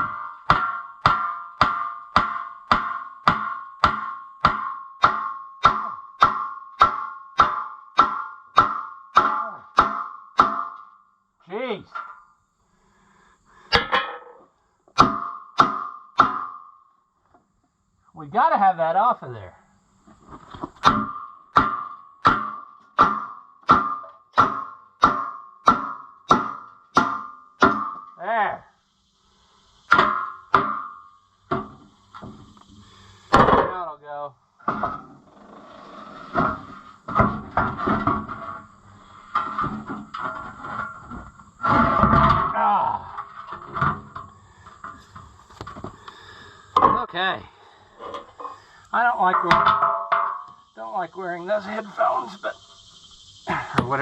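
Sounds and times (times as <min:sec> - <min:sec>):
hammer blows on steel wheel rim: 0:00.0 - 0:10.9, 0:13.7 - 0:16.7, 0:20.8 - 0:28.2.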